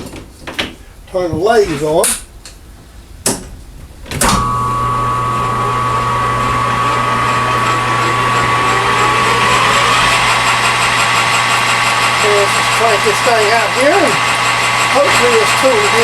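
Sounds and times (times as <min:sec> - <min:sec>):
lathe motor humming and whining: 0:04.3 - 0:16.0.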